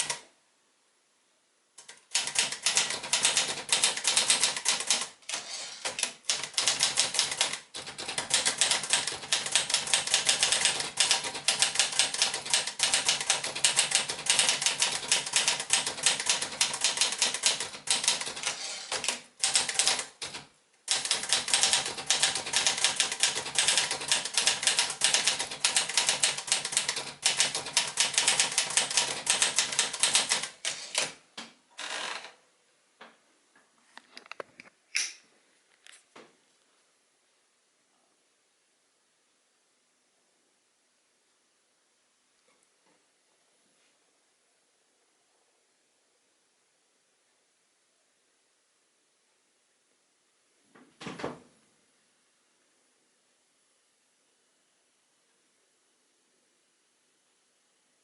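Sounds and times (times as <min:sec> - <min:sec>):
manual typewriter typing: 0:00.0 - 0:00.2, 0:01.8 - 0:31.2.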